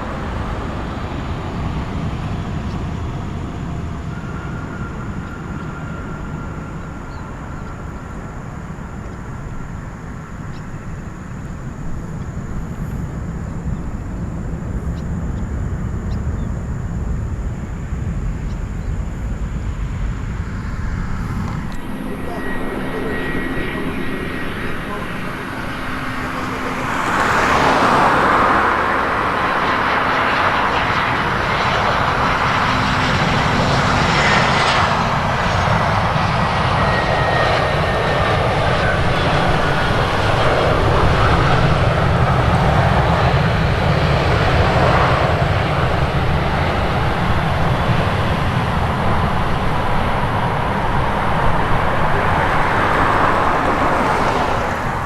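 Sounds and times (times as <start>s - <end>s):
airliner engines roaring: 0.0s - 55.0s
high whine falling in pitch: 10.1s - 55.0s.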